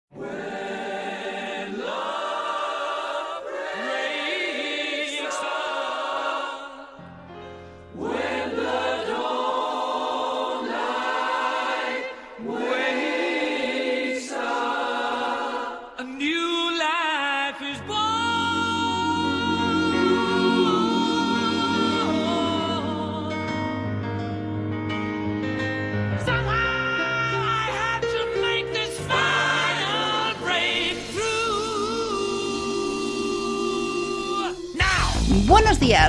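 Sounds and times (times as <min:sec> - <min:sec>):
choir singing held chords: 0:00.1 - 0:16.1, 0:17.6 - 0:24.2, 0:26.7 - 0:35.3.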